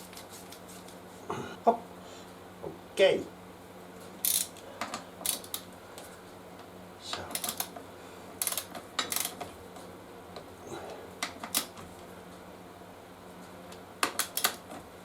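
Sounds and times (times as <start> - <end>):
torque wrench ratcheting clicks: 4.2 - 4.6, 5.2 - 5.6, 7.3 - 7.7, 8.4 - 9.4, 14.1 - 14.6.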